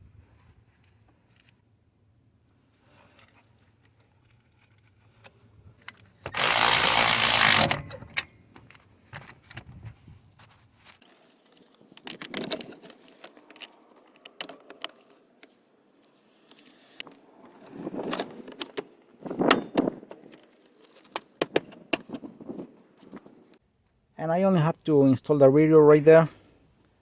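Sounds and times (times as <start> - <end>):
loud rattling bursts: 6.3 - 8.0
clicks and knocks of tools: 11.0 - 23.6.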